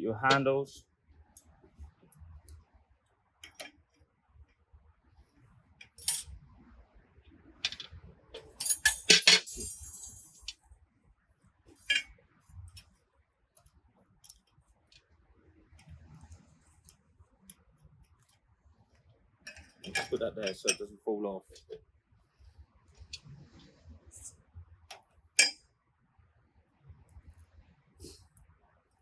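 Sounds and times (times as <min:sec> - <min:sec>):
metal parts clinking and clattering: 0:05.8 - 0:06.3, 0:07.6 - 0:10.6, 0:11.8 - 0:12.1, 0:19.5 - 0:20.9.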